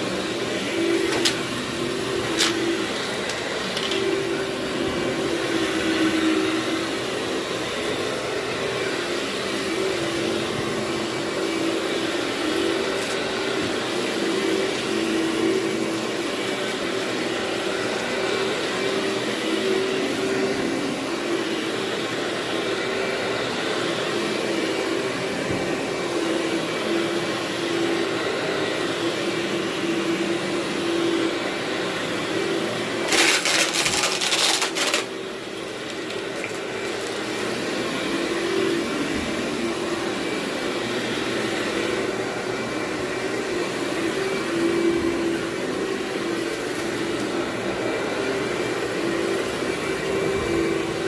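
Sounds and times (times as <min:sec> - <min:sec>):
vacuum cleaner on carpet: 0:00.0 - 0:51.0.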